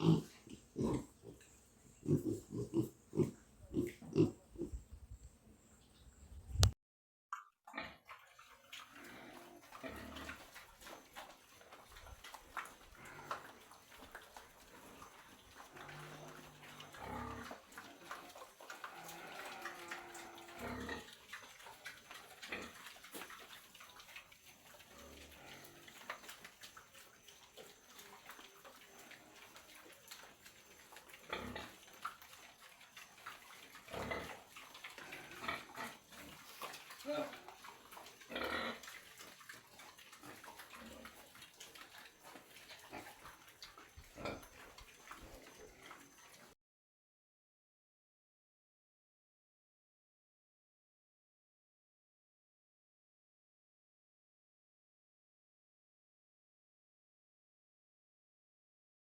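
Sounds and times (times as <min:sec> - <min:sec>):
pigs grunting: 0:00.0 - 0:05.0, 0:07.7 - 0:46.5.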